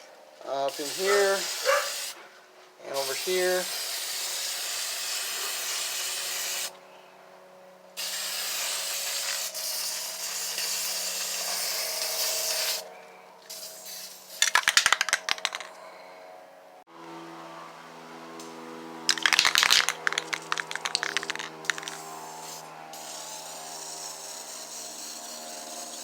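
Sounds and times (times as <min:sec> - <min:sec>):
aerosol can spraying: 0:00.7 - 0:02.2, 0:02.9 - 0:06.7, 0:08.0 - 0:12.8, 0:13.5 - 0:14.9, 0:19.1 - 0:26.0
sharp rattling clicks: 0:19.1 - 0:22.0.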